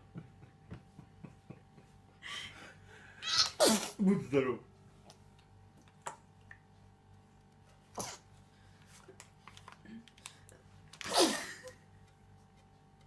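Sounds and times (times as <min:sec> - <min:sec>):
baby sneezing: 0:03.3 - 0:04.0, 0:11.0 - 0:11.5.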